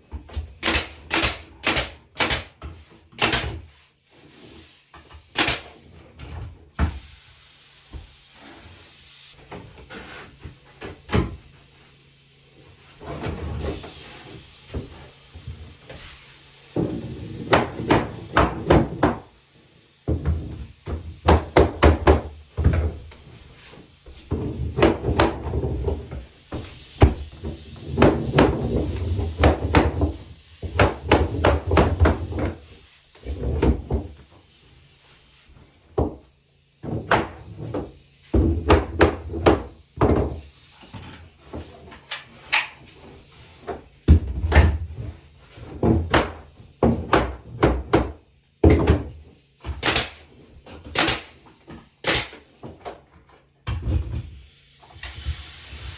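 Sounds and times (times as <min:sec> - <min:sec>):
wooden knocks and thuds: 0:45.7 - 0:49.1.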